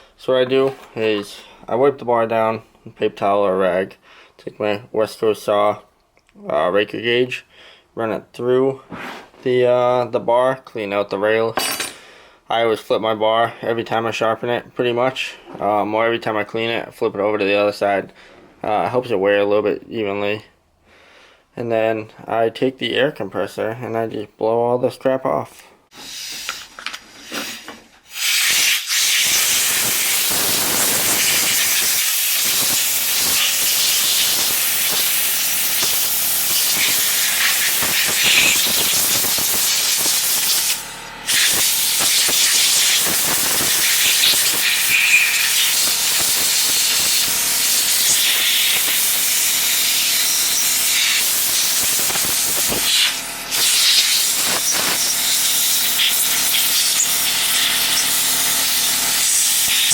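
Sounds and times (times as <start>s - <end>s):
compressed air hissing from nozzle: 25.9s - 59.9s.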